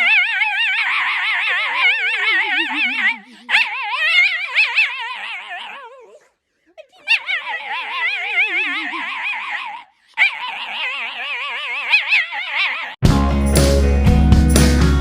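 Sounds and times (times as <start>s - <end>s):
dog howling: 0.0s - 13.0s
loud music: 13.0s - 15.0s.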